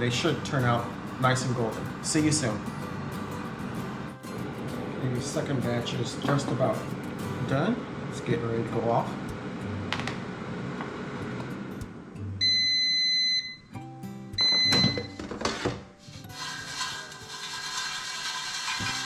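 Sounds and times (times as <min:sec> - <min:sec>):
air fryer timer beeping: 0:12.4 - 0:13.7, 0:14.4 - 0:15.2.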